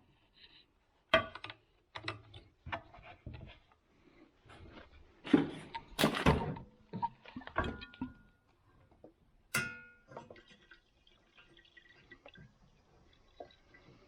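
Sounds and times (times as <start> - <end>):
clicks and knocks of handling: 1.1 - 3.7
ringing metal clank: 9.6 - 10.1.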